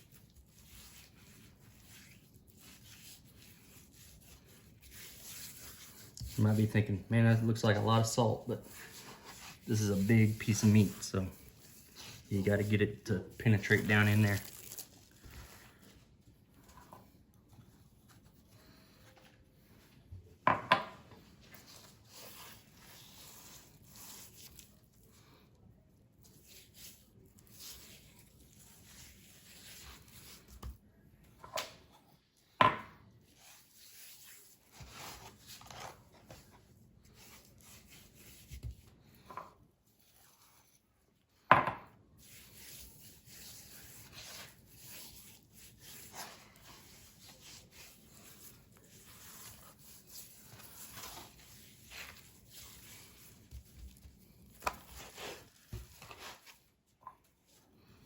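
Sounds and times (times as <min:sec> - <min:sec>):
hands rubbing and patting meat: 0:00.0 - 0:20.1, 0:21.0 - 0:25.1, 0:42.2 - 0:57.6.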